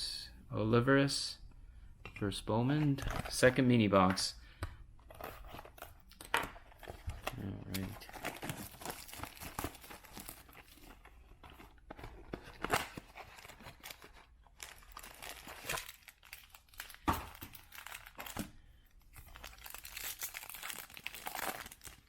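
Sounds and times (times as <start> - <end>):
foil wrapper rustling and ripping: 7.4 - 10.9, 12.5 - 18.4, 19.2 - 22.0.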